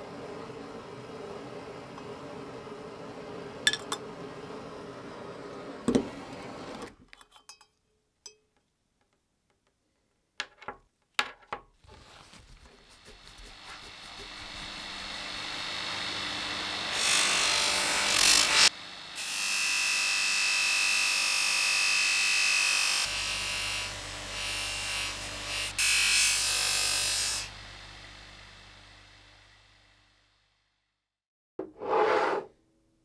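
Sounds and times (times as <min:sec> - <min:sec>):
power tool scraping steel: 0:12.0 - 0:18.7.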